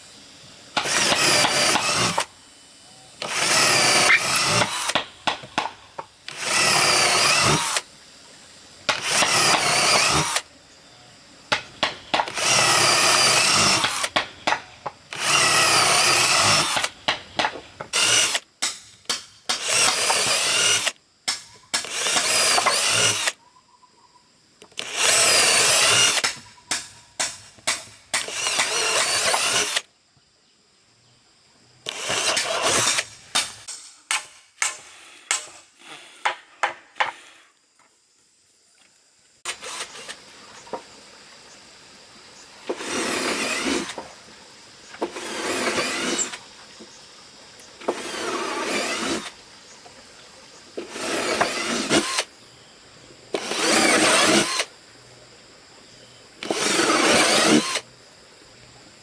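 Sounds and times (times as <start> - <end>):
power drill drilling into wood: 0.8 - 2.3, 3.2 - 5.0, 6.3 - 7.9, 8.9 - 10.5, 12.3 - 14.2, 15.1 - 17.0, 17.9 - 18.4, 19.5 - 21.0, 21.8 - 23.4, 24.7 - 26.3, 28.1 - 29.9, 31.9 - 33.1, 39.5 - 40.2, 42.8 - 44.0, 45.1 - 46.4, 47.8 - 49.3, 50.8 - 52.3, 53.4 - 54.7, 56.4 - 57.9.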